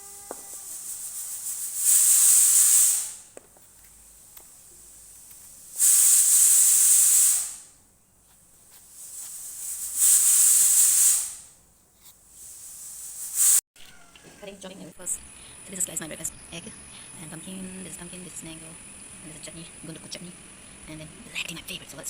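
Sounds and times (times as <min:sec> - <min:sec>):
steam hissing: 0:00.0 - 0:13.6.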